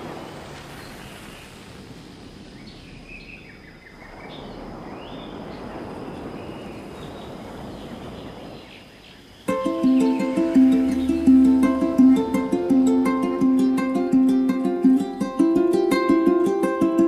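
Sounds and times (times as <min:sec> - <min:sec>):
outdoor rushing noise: 0:00.0 - 0:08.3.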